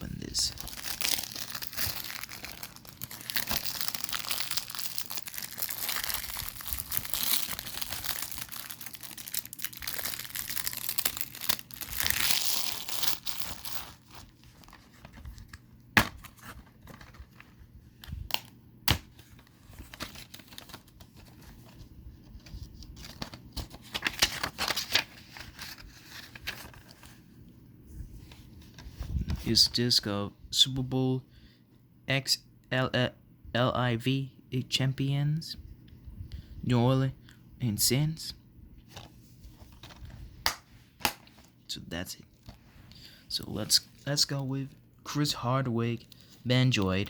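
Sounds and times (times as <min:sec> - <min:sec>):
plastic wrap tearing and crinkling: 0:00.2 - 0:15.4.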